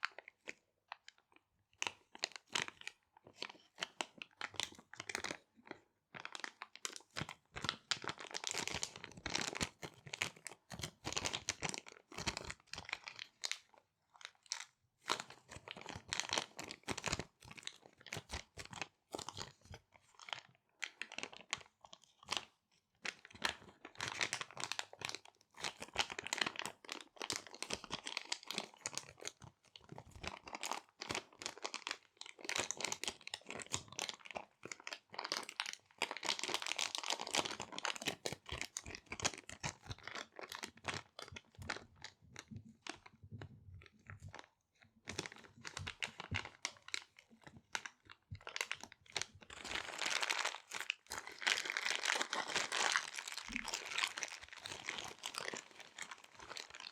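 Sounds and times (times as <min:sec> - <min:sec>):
plastic bags crinkling: 0:45.1 - 0:56.9.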